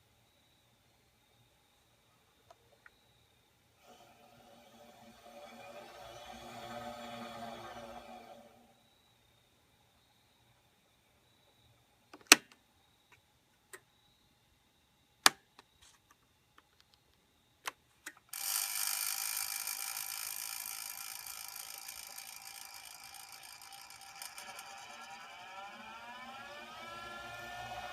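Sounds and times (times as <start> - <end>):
lathe motor whine: 3.8 - 8.9, 18.4 - 27.9.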